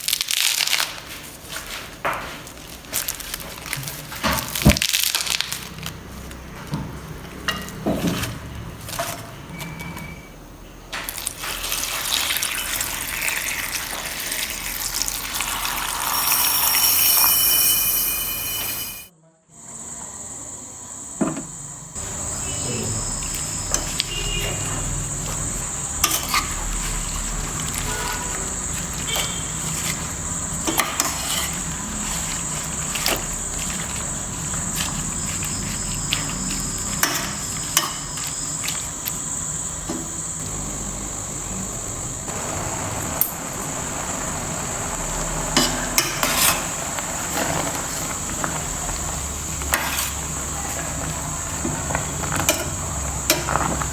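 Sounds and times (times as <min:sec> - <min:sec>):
cooking hiss: 0:11.0 - 0:53.9
metal spoon stirring in a pan: 0:11.4 - 0:19.1, 0:26.0 - 0:38.9.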